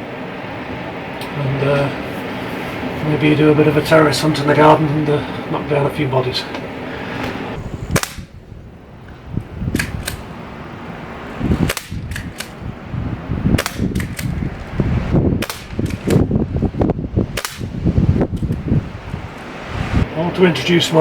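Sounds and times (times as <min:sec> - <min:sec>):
air rifle shots: 0:07.8 - 0:08.6, 0:09.7 - 0:10.4, 0:11.5 - 0:12.7, 0:13.5 - 0:14.4, 0:15.4 - 0:16.3, 0:17.3 - 0:18.5.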